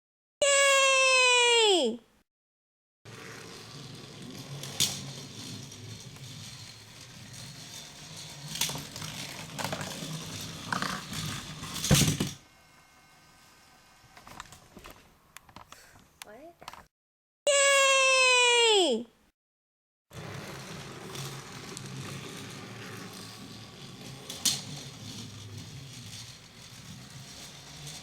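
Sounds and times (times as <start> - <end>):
toy train motor hum: 3.1 - 14.5, 20.1 - 28.0
toy train clacks on track: 3.4 - 12.4, 20.3 - 28.0.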